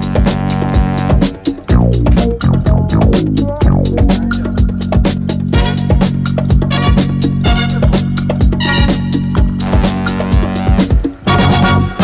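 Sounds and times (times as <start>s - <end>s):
upbeat funky music: 0.0s - 12.0s
kick drum: 0.8s - 7.7s.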